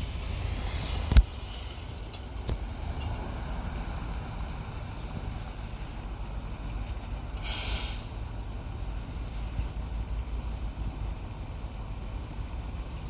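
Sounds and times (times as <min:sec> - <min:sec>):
truck engines idling: 0:00.0 - 0:13.0
burst of hiss: 0:07.4 - 0:08.1.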